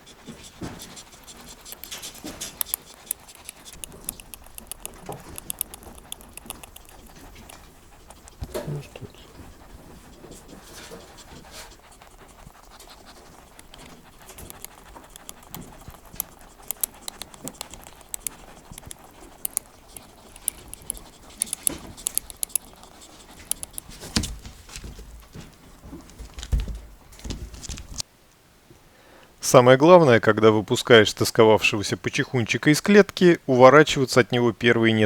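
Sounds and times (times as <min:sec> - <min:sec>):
rabbit grinding its teeth: 0:00.0 - 0:25.0.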